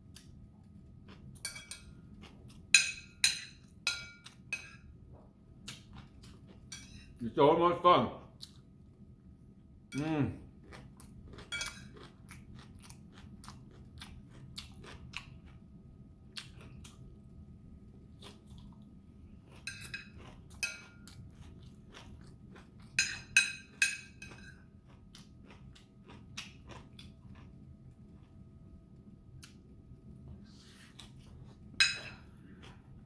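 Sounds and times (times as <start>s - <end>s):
chewing crunchy food: 0.1s - 2.7s, 5.6s - 6.7s, 10.4s - 15.7s, 16.3s - 17.1s, 18.0s - 28.6s, 29.4s - 33.0s.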